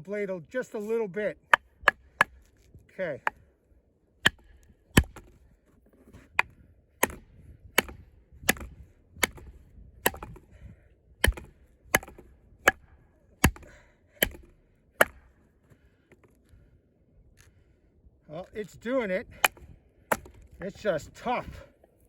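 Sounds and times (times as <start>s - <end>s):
baton hammering knife into log: 1.5s - 2.5s, 3.2s - 3.4s, 4.2s - 5.4s, 6.3s - 10.4s, 11.2s - 15.3s, 19.4s - 20.4s.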